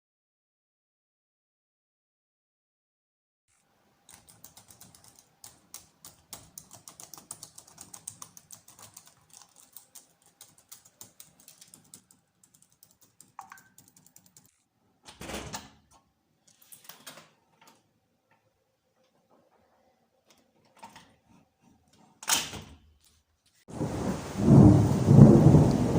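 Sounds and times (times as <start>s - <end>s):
irregular keyboard-like clicking: 4.0s - 14.7s.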